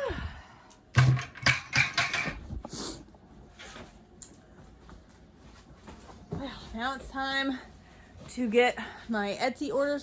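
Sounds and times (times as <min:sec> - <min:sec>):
knocks and clatters: 0:01.0 - 0:02.5.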